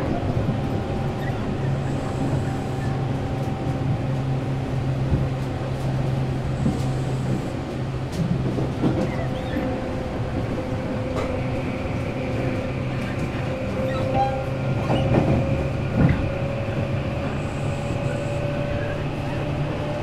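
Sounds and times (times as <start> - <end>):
train motor hum and whine: 0.0 - 20.0.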